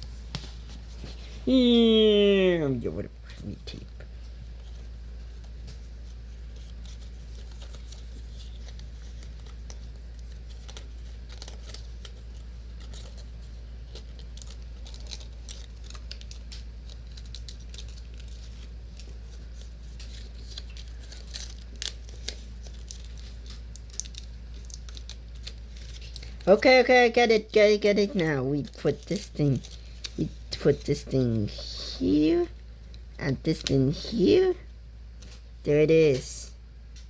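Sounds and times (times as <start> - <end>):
low steady hum: 0.0 - 37.0
paper crinkling and rustling: 3.3 - 34.5.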